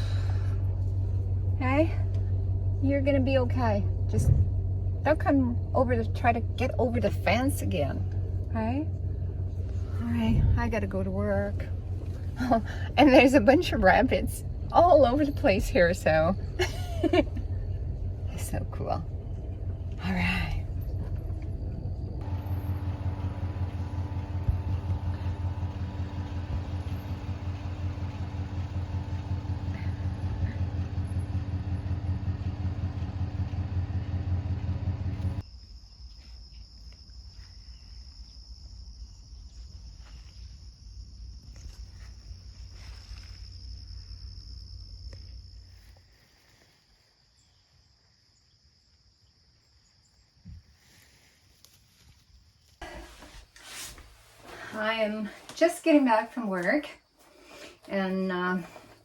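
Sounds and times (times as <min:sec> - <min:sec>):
truck engine humming: 0:00.0 - 0:35.4
faint low rumble: 0:00.0 - 0:47.5
crickets chirring: 0:19.3 - 0:52.9.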